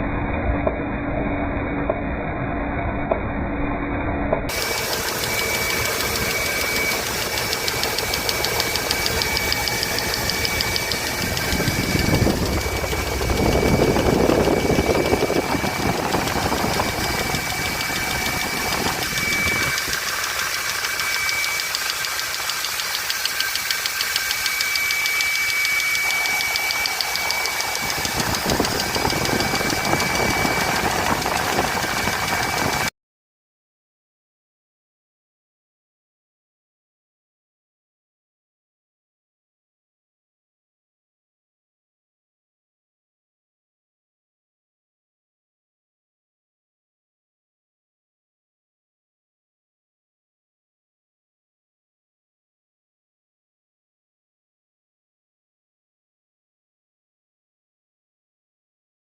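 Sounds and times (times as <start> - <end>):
engine running: 0.1 - 32.9
rapid valvetrain ticking: 4.5 - 32.9.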